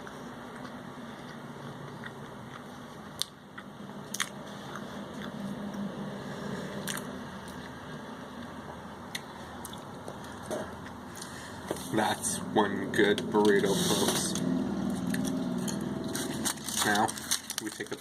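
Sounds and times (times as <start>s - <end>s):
person chewing food: 0.0s - 11.9s
low background hum: 0.0s - 18.0s.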